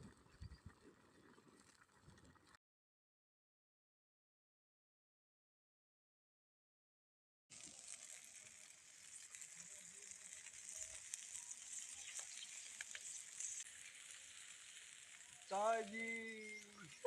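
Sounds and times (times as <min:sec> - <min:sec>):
small crackles: 0:00.0 - 0:02.6, 0:07.5 - 0:17.0
food sizzling in hot oil: 0:07.5 - 0:17.0.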